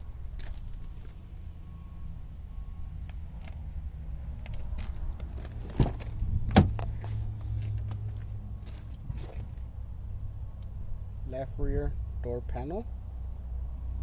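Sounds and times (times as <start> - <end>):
steady low rumble: 0.0 - 14.0
car door clicks: 5.7 - 6.9.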